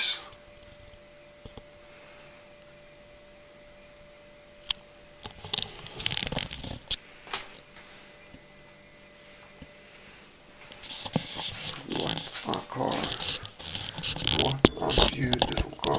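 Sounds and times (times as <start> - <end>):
faint steady hum: 0.0 - 15.9
plastic clicking and rustling: 11.0 - 15.9.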